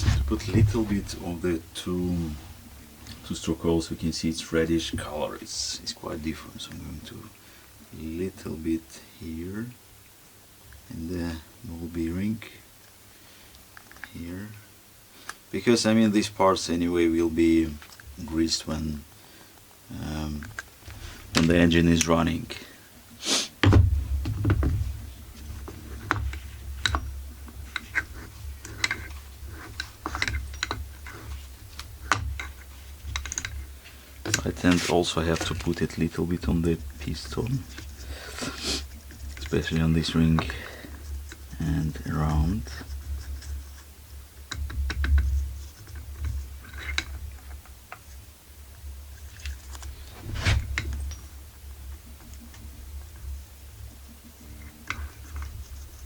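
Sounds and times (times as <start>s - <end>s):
steady low hum: 0.0s - 9.9s, 15.5s - 56.0s
loud knock: 23.6s - 24.8s
light clicks and taps: 25.4s - 38.1s
small engine parts clicking: 27.6s - 33.6s.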